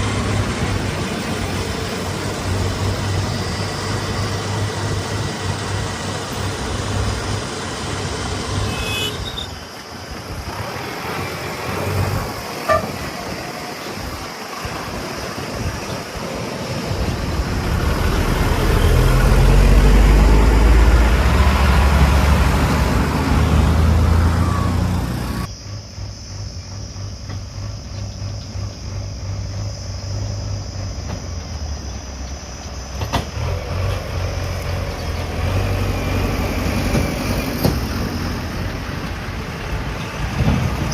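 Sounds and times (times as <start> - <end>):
heavy diesel engines: 0.0 - 40.9.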